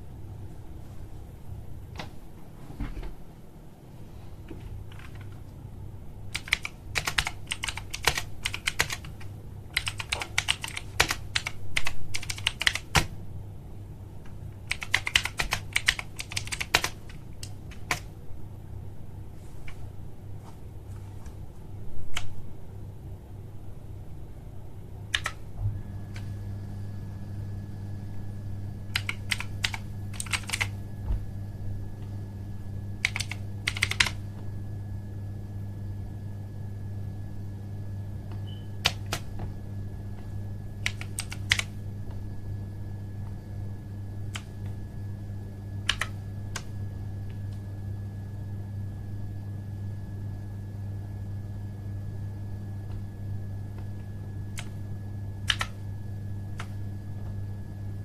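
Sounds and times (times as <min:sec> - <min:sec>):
steady low hum: 0:00.0 - 0:58.0
mechanical keyboard clicks: 0:06.3 - 0:13.1, 0:14.7 - 0:18.1, 0:25.1 - 0:25.4, 0:28.9 - 0:30.7, 0:33.0 - 0:34.2, 0:40.8 - 0:41.7, 0:45.8 - 0:46.7, 0:55.5 - 0:55.8.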